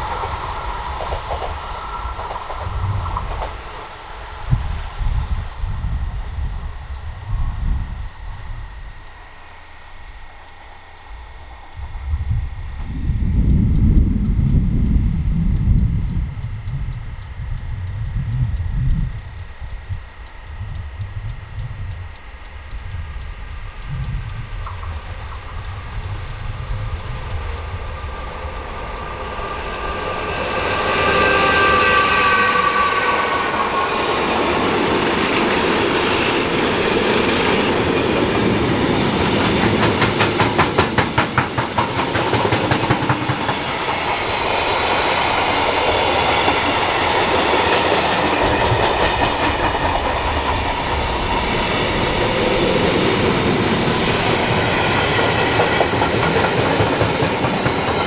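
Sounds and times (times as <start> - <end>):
clickety-clack of wheels on track: 0.0 - 5.8, 18.4 - 58.0
electric train motor whine: 0.0 - 58.0
wheel-on-rail rumble: 0.0 - 58.0.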